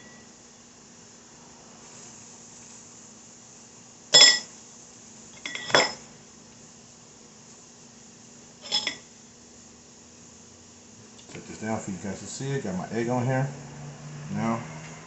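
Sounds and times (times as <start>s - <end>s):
metal utensil clinking on dish: 8.6s - 9.0s.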